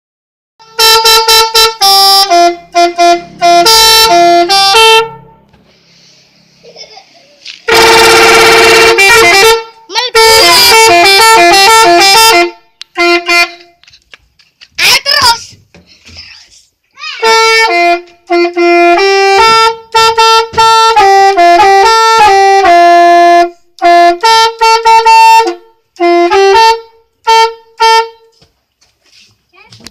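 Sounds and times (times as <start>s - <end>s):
musical bus horn: 0.6s - 5.7s, 7.7s - 13.8s, 17.2s - 28.4s.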